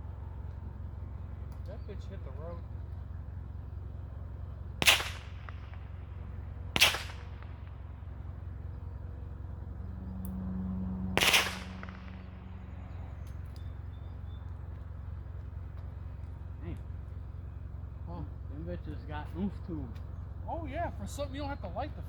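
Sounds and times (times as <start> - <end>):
firecracker bangs: 4.8 - 7.8, 11.1 - 12.5.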